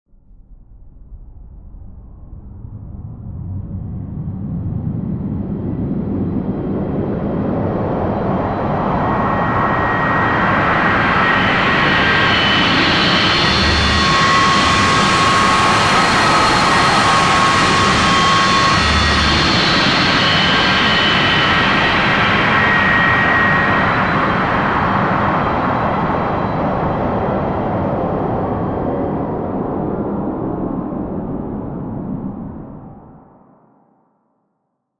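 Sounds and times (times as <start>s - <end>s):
synthesized spaceship rumble: 0.2s - 21.8s.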